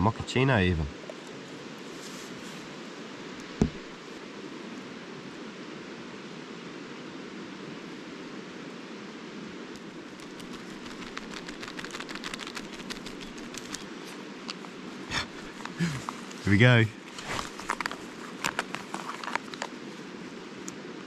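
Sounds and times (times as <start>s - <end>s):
small clicks and rustles: 9.8s - 14.7s, 17.2s - 19.8s.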